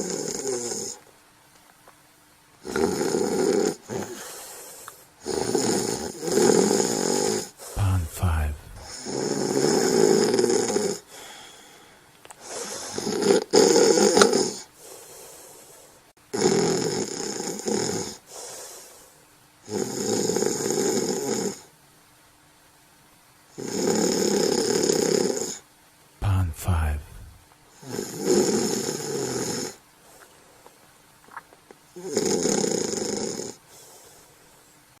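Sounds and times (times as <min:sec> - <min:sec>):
person snoring: 0:02.6 - 0:04.3, 0:05.2 - 0:11.8, 0:12.4 - 0:14.7, 0:26.2 - 0:29.8, 0:32.0 - 0:33.6
faint breaths: 0:03.9 - 0:05.2, 0:07.4 - 0:09.2, 0:11.0 - 0:13.1, 0:14.6 - 0:16.1, 0:18.2 - 0:19.3, 0:26.2 - 0:27.9, 0:33.6 - 0:34.9.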